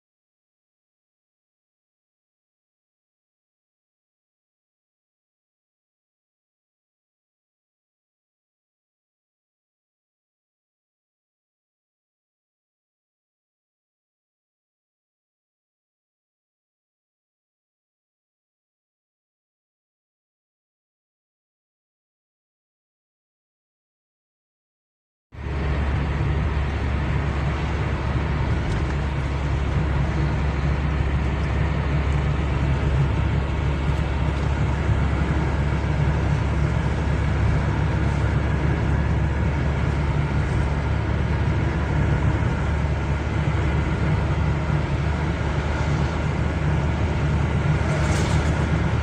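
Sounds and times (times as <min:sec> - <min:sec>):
car road and engine drone: 0:25.4 - 0:49.0.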